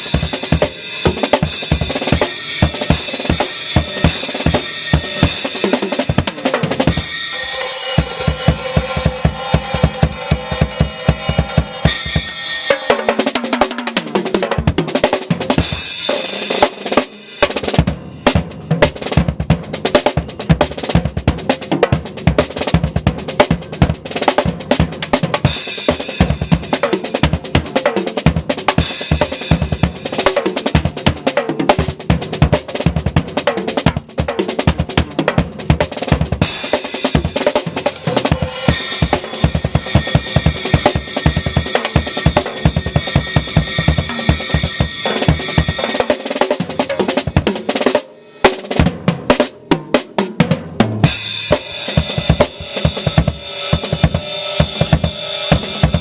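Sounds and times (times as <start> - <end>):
snare and tom fills: 0.0 - 56.0
cymbal wash: 6.9 - 13.0.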